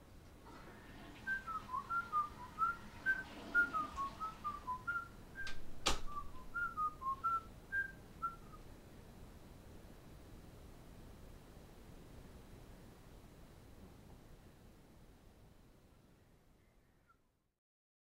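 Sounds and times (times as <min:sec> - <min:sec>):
person whistling a tune: 0:01.3 - 0:08.6
sharp click: 0:05.4 - 0:06.2.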